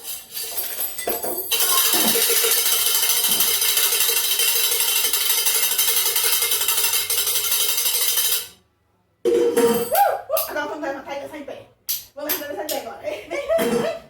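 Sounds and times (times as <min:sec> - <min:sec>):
spoons rattling as percussion: 0:00.0 - 0:08.6.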